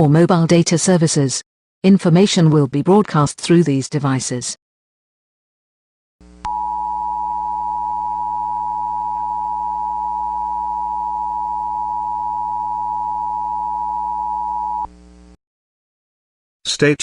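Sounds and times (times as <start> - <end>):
faint low hum: 6.3 - 15.4
steady two-tone attention signal: 6.5 - 14.9.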